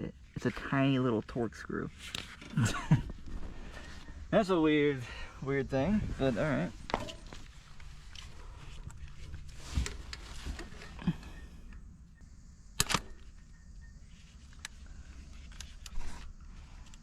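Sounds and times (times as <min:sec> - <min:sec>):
low steady hum: 0:00.0 - 0:17.0
sharp click: 0:12.8 - 0:13.4.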